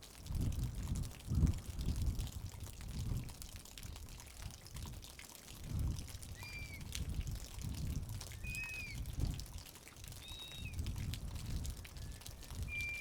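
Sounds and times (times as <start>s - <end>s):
water trickling and pouring: 0.0s - 13.0s
bird whistled calls: 6.4s - 6.9s, 8.4s - 9.0s, 10.2s - 10.8s, 12.1s - 13.0s.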